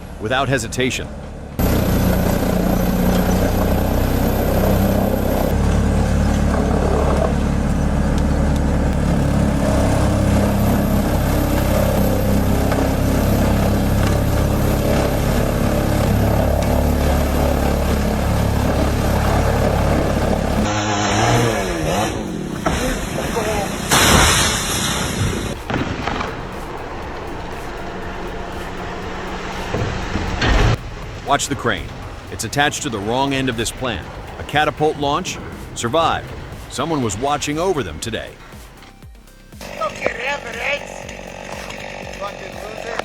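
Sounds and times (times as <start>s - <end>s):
wood chipper engine under load: 1.0s - 43.0s
hissing sound: 8.9s - 43.0s.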